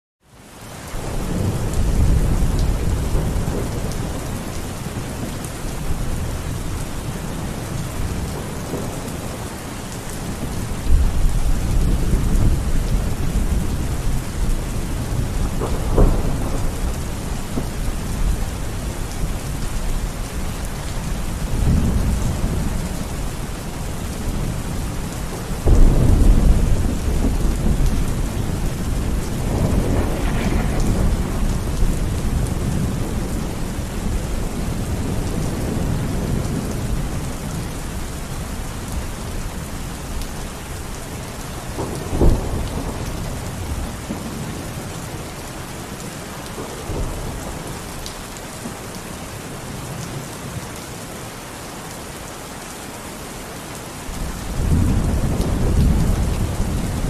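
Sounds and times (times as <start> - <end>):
heavy rain falling: 0.2 - 57.0
thunder rumbling: 10.2 - 20.3, 21.1 - 38.0, 41.7 - 44.9, 54.1 - 57.0
sharp thunder crack: 29.4 - 32.7.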